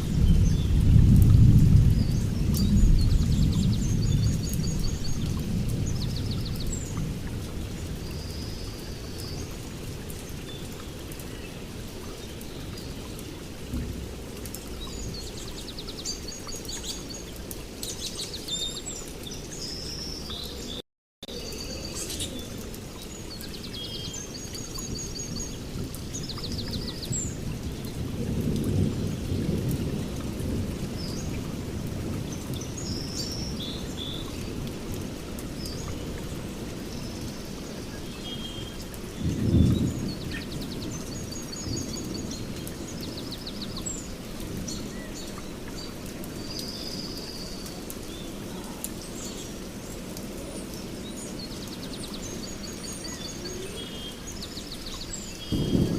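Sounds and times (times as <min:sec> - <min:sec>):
low rumble of thunder: 0:00.0 - 0:10.1, 0:12.3 - 0:15.9, 0:24.2 - 0:37.9, 0:38.6 - 0:55.9
steady rain: 0:00.0 - 0:55.9
small birds chirping: 0:01.9 - 0:13.8, 0:14.4 - 0:55.9.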